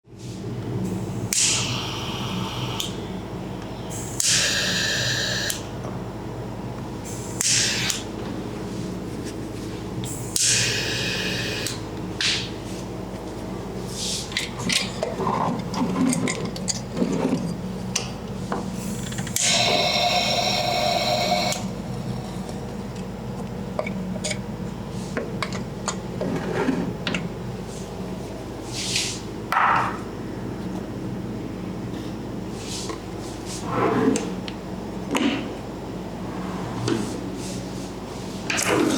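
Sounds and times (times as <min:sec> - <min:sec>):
handling clicks taps and scraping: 0:14.3 - 0:19.4, 0:22.4 - 0:24.5, 0:25.1 - 0:26.3
steady buzz: 0:18.7 - 0:22.5.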